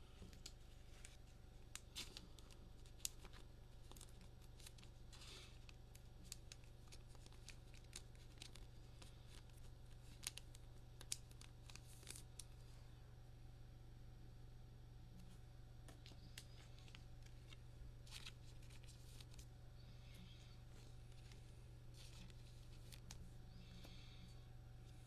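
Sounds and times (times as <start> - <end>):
steady low hum: 0.0 - 25.0
cards being flipped through: 15.9 - 19.5.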